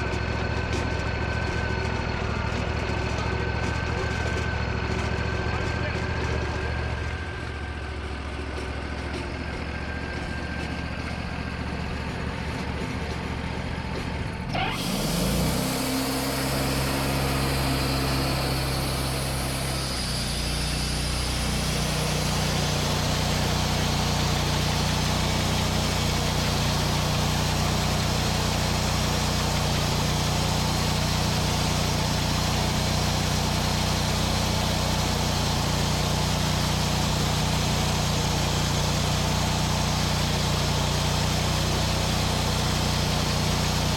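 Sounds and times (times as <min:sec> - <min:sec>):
sawmill engine revving: 0:00.0 - 0:43.9
saw blade hissing through log: 0:14.5 - 0:43.9.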